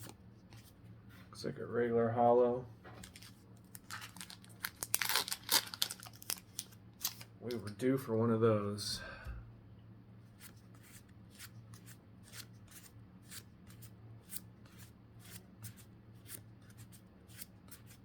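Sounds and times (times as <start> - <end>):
steady low hum: 5.8 - 18.0.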